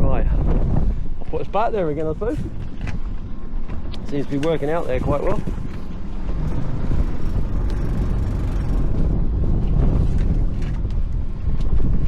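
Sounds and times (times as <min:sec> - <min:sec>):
wind buffeting microphone: 0:00.0 - 0:12.0
boat motor running: 0:04.6 - 0:10.8.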